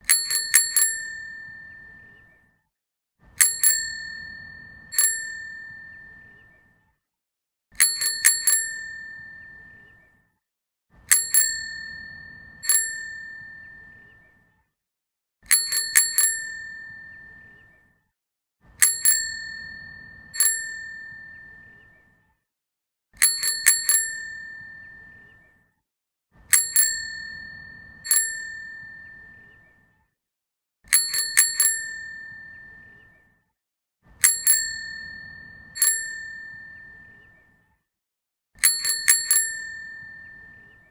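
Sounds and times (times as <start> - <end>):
bicycle bell dinging: 0.0 - 2.1, 3.4 - 6.3, 7.8 - 9.8, 11.1 - 13.9, 15.5 - 17.4, 18.8 - 21.7, 23.2 - 25.1, 26.5 - 29.5, 30.9 - 33.0, 34.2 - 37.2, 38.6 - 40.7.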